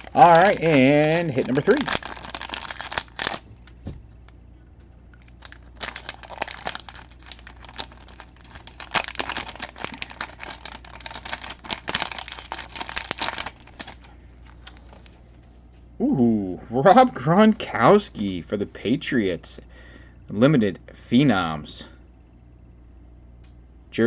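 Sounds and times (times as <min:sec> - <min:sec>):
packaging crinkling: 0:00.0 - 0:03.9, 0:05.1 - 0:15.2.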